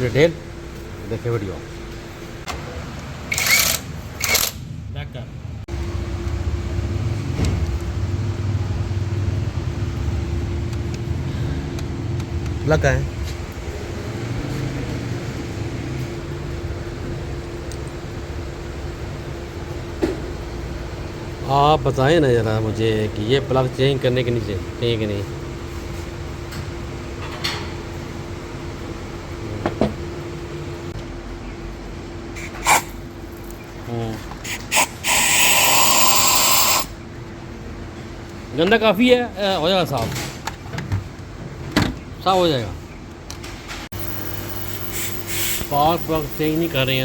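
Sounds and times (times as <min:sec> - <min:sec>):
steady mechanical hum: 0:00.0 - 0:47.0.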